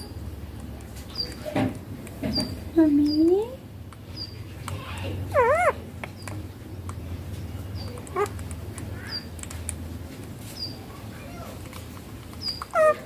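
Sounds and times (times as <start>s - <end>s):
parakeet calling: 4.1s - 6.4s, 7.8s - 9.4s, 12.4s - 13.0s.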